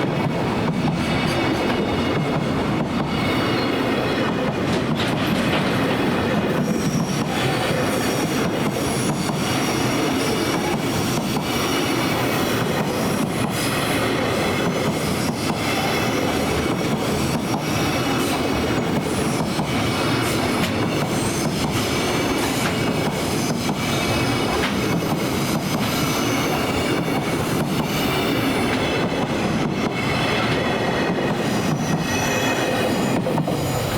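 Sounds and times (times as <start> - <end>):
steel wheels rumbling on rail: 0.0 - 33.9.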